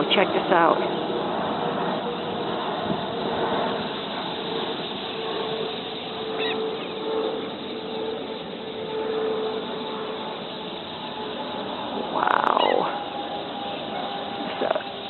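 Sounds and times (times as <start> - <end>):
airplane drone: 0.0 - 15.0
water birds calling: 2.0 - 15.0
high bird call: 5.9 - 7.6, 12.0 - 15.0.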